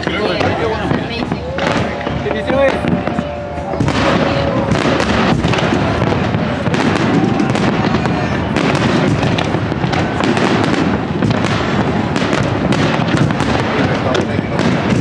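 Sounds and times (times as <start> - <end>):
fireworks crackling and banging: 0.0 - 15.0.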